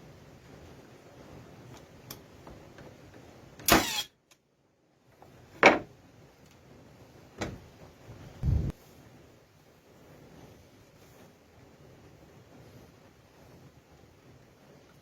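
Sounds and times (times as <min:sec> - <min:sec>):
nail gun shots: 0:03.6 - 0:04.1.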